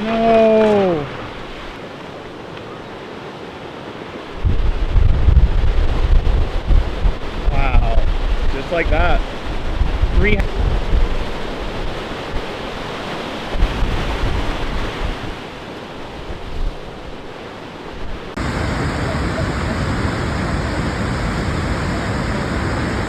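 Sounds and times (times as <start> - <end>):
waterfall rushing: 0.0 - 16.3
rough surf: 0.0 - 23.0
wind buffeting microphone: 4.3 - 23.0.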